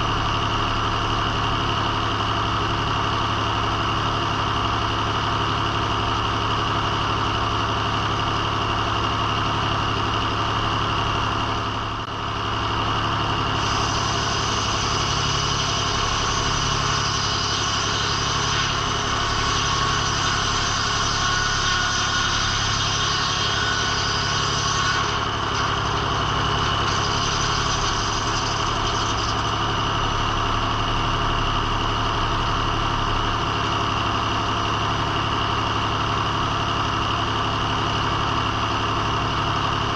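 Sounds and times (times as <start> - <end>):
circle sawmill running: 0.0 - 39.9
high-pitched whine: 12.2 - 34.4.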